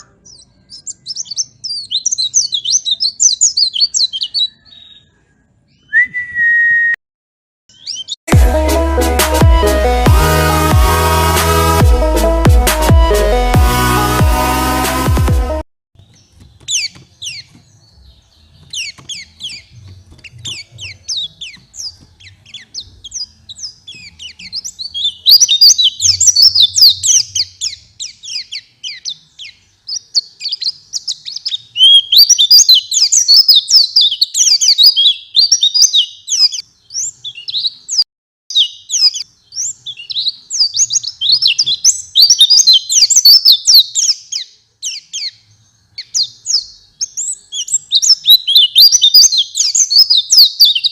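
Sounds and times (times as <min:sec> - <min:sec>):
white-eye bird twittering: 0:18.6 - 0:37.8, 0:38.5 - 0:45.4, 0:46.0 - 0:50.9.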